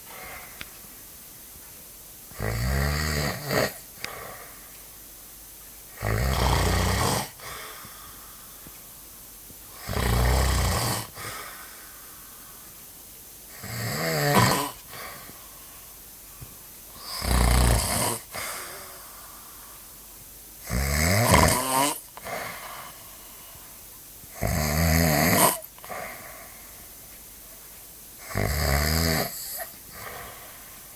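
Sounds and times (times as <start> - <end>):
loud snoring: 2.3 - 4.5, 5.9 - 7.6, 9.7 - 11.5, 13.5 - 15.2, 17.0 - 19.0, 20.6 - 23.0, 24.4 - 26.2, 28.2 - 30.6.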